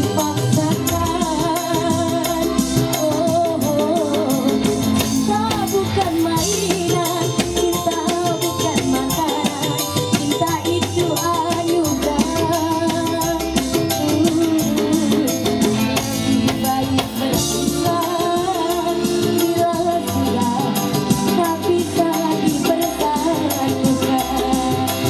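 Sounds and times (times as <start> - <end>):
person singing: 0.0 - 25.0
steady percussion beat: 0.0 - 25.0.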